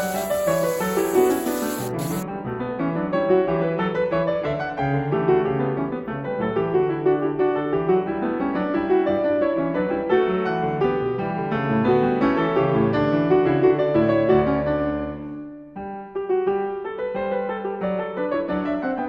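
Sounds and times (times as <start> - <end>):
piano music: 0.0 - 2.2.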